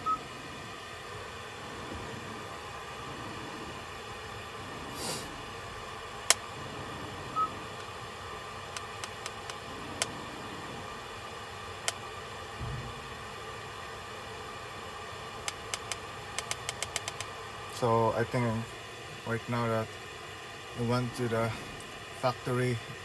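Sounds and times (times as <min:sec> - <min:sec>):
car cabin hiss: 0:04.9 - 0:05.5
sharp clicks: 0:08.7 - 0:10.2, 0:15.4 - 0:17.3.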